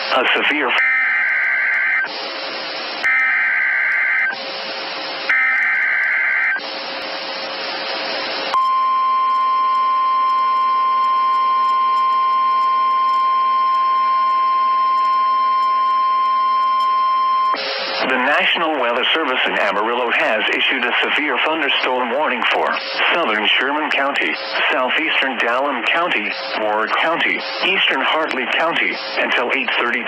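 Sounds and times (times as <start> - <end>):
screeching digital data bursts: 5.3 - 6.6.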